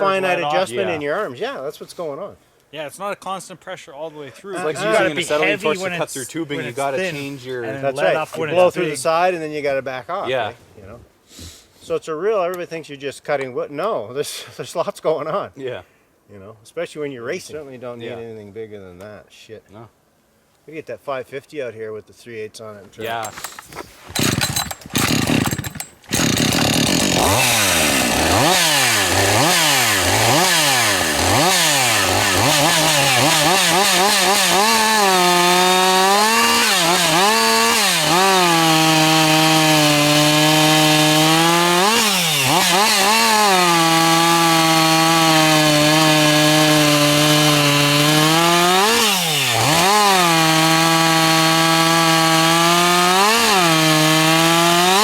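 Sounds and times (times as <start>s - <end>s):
chainsaw cutting through log: 23.2s - 55.0s
chainsaw sputtering and revving: 24.2s - 55.0s.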